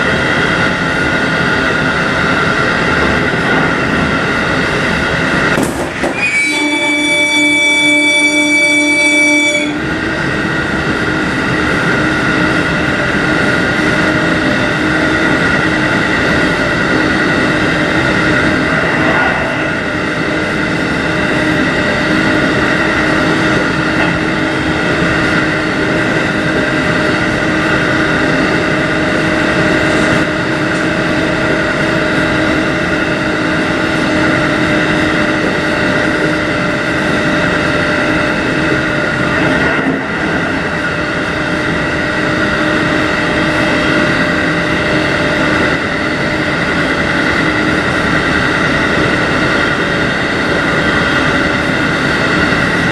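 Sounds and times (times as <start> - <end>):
train wheels rumbling on rail: 0.0 - 52.9
train motor whine: 0.1 - 52.9
train horn blast: 6.0 - 10.0.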